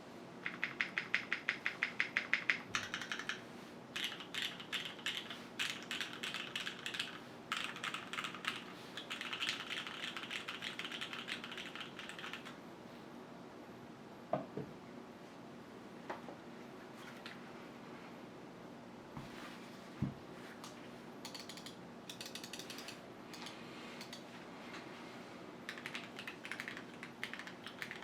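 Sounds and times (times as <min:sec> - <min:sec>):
typing on mechanical keyboard: 0:00.4 - 0:03.4, 0:04.0 - 0:12.6, 0:21.2 - 0:24.2, 0:25.7 - 0:28.0.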